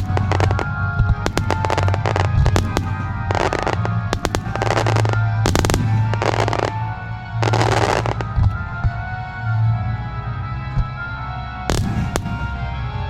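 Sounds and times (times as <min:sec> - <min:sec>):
rushing firework bursts: 0:00.0 - 0:06.8, 0:07.4 - 0:08.3
fireworks bangs: 0:00.0 - 0:09.1, 0:11.7 - 0:12.8
music: 0:00.0 - 0:13.0.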